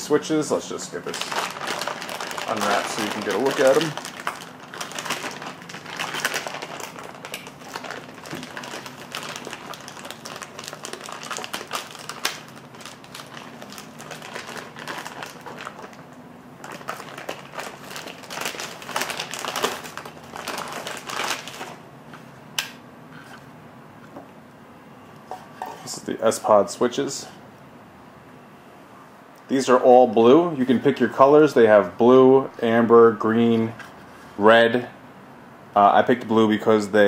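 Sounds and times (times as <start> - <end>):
plastic wrap crinkling: 0.5 - 21.8.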